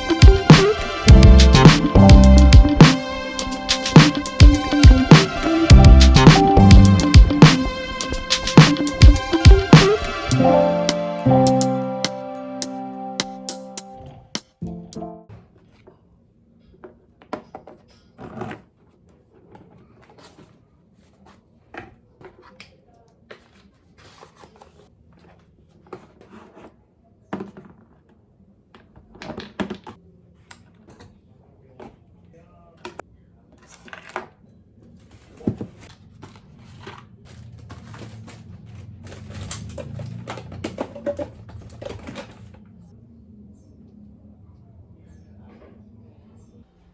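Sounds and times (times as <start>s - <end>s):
low hum: 1.1s - 2.8s, 5.7s - 7.4s
objects clicking and knocking: 35.1s - 42.6s.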